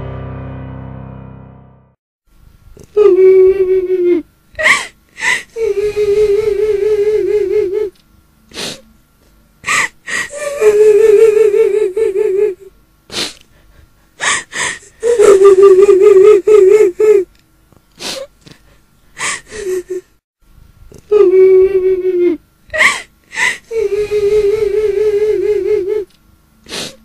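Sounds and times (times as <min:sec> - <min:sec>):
woman wailing: 0:03.0 - 0:07.9, 0:09.7 - 0:12.7, 0:14.2 - 0:17.2, 0:21.1 - 0:26.1
gasping sobbing breaths: 0:03.9 - 0:07.9, 0:09.6 - 0:12.4, 0:13.1 - 0:15.5, 0:18.0 - 0:20.1, 0:22.1 - 0:26.0.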